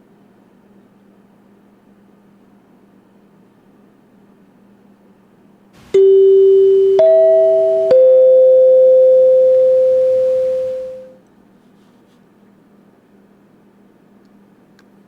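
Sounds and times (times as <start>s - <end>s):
three-note chime: 5.9s - 11.2s.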